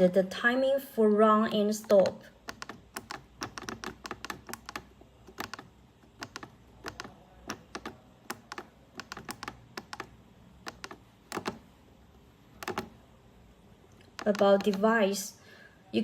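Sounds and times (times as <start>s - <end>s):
keypad button clicks: 1.8s - 11.7s, 12.6s - 13.0s, 14.0s - 14.8s.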